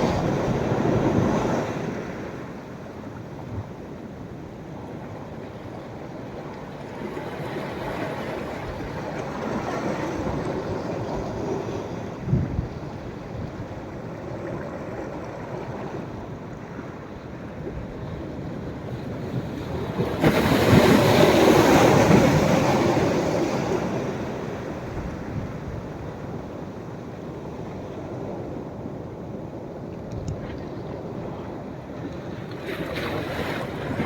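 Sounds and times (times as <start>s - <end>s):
wind gust on microphone: 8.6s - 13.8s
surf washing on beach: 15.1s - 34.0s.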